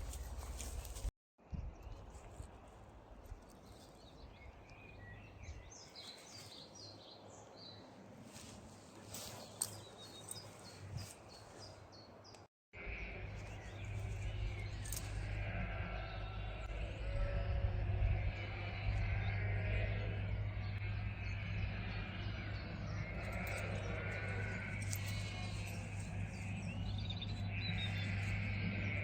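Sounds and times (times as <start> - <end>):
songbirds chirping and trilling: 0.0 - 29.0
steady low rumble: 12.8 - 29.0.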